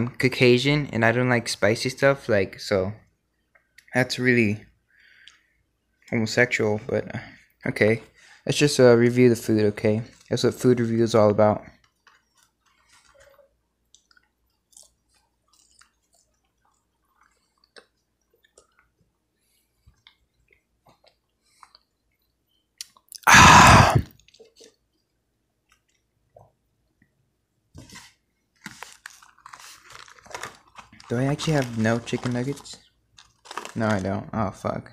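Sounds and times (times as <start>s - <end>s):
person chewing food: 11.8s - 22.2s.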